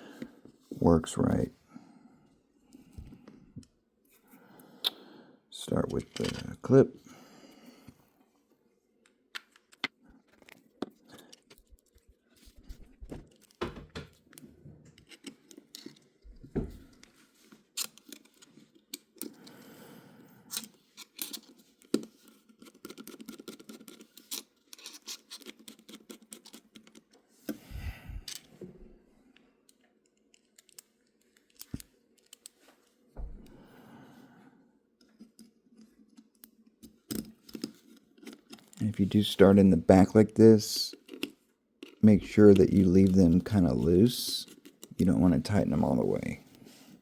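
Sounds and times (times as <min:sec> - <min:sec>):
small metal parts clicking: 0:20.5 - 0:21.5, 0:22.8 - 0:27.0.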